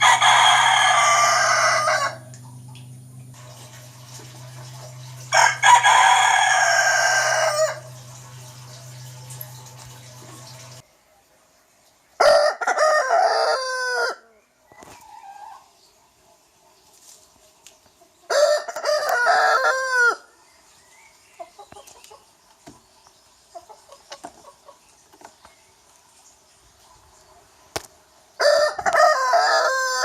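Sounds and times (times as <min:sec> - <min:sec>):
rooster crowing: 0:00.0 - 0:02.4, 0:05.2 - 0:08.1, 0:12.2 - 0:14.3, 0:18.3 - 0:20.3, 0:28.4 - 0:30.0.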